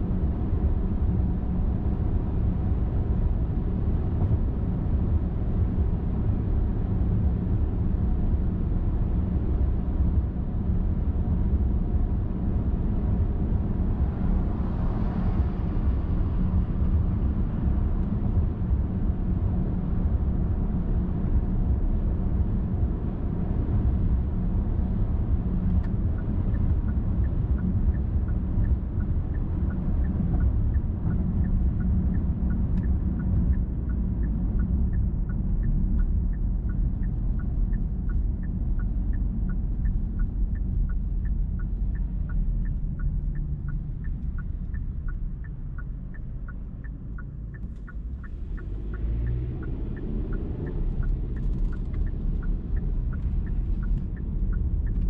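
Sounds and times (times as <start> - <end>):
car engine and tyre rumble: 0.0 - 55.0
regular light ticking: 25.7 - 55.0.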